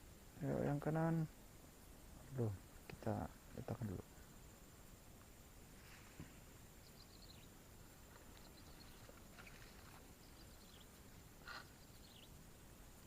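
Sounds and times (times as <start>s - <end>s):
faint high-pitched bird chirps: 6.8s - 12.4s.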